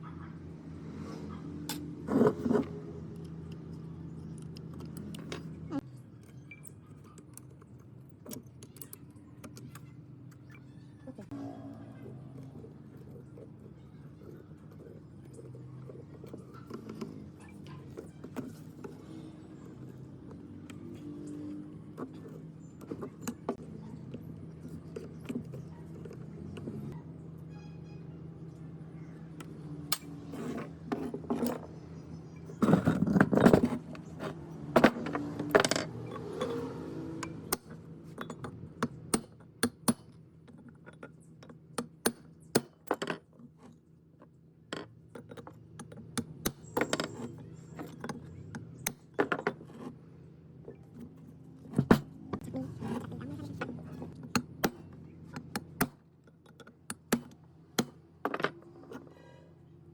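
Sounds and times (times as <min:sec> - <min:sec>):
metal parts clinking and scraping: 0:32.4 - 0:39.4.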